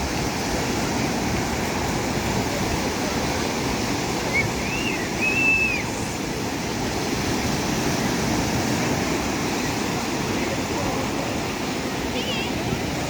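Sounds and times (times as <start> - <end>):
waves breaking: 0.0 - 13.0
high whistle-like call: 4.3 - 5.9.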